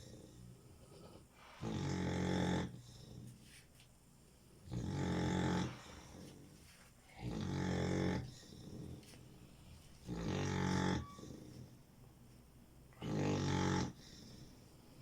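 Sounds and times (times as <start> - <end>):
puppy snoring: 0.0 - 3.6, 4.6 - 6.5, 7.1 - 9.2, 10.0 - 11.9, 12.9 - 14.6.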